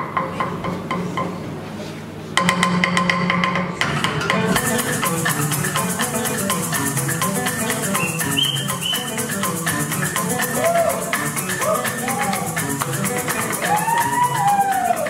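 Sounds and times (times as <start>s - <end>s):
plucked string instruments: 2.4s - 15.0s
maracas shaken: 4.4s - 15.0s.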